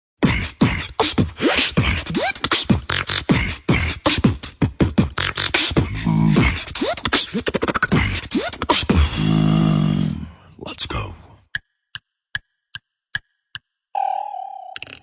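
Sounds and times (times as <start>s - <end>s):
beatboxing buzzing held tone: 0.2s - 9.2s
beatboxing clicks and thuds: 0.2s - 9.2s, 11.4s - 13.8s.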